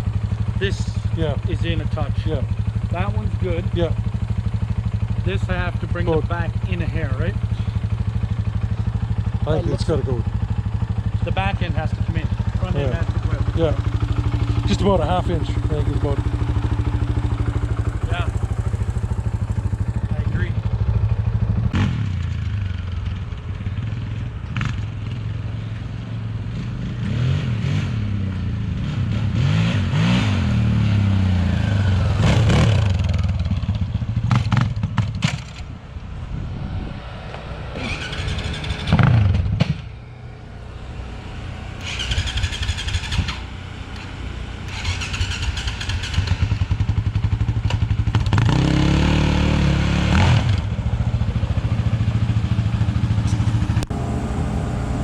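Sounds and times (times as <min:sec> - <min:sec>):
atv engine idling with throttle blips: 0:00.0 - 0:27.0, 0:30.5 - 0:55.0
clatter: 0:32.2 - 0:35.7, 0:44.7 - 0:48.6.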